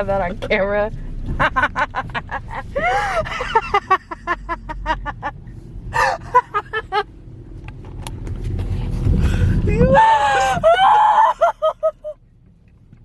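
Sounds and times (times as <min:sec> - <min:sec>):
low rumble: 0:00.0 - 0:11.1
young women laughing: 0:01.4 - 0:07.1, 0:09.8 - 0:12.2.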